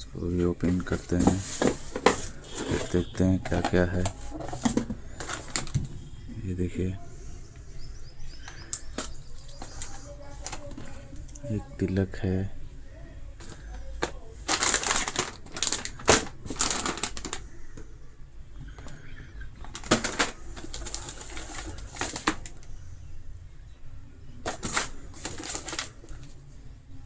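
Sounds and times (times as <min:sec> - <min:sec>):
gift packaging crinkling: 0:00.3 - 0:06.2, 0:08.2 - 0:11.4, 0:13.4 - 0:17.8, 0:18.7 - 0:22.8, 0:24.4 - 0:26.5.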